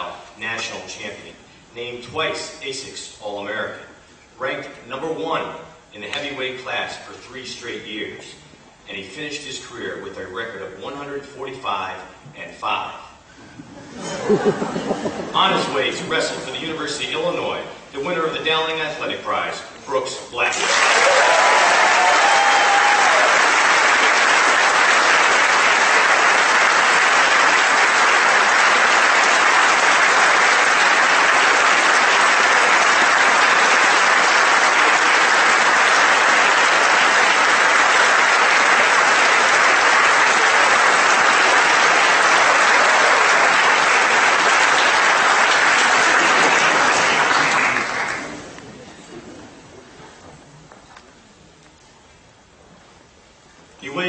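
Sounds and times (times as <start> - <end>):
audience applauding: 20.6 - 48.6.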